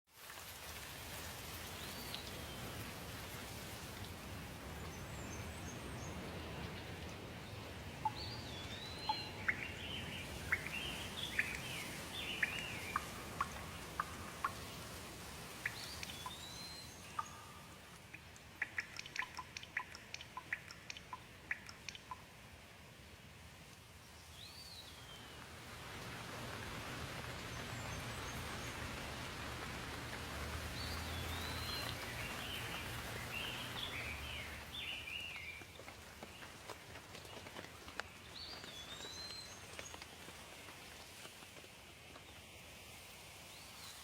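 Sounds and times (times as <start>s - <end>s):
steady rain: 0.1s - 44.0s
birds singing: 4.8s - 14.8s, 15.6s - 17.8s, 30.7s - 36.5s.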